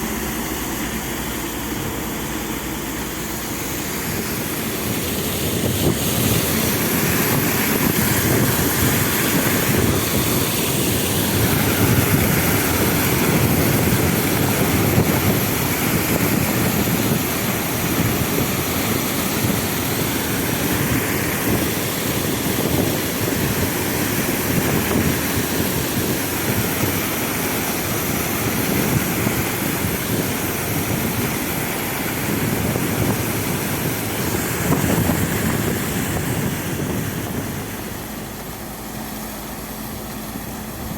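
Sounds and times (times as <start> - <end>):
sand pump rumbling: 0.0 - 40.9.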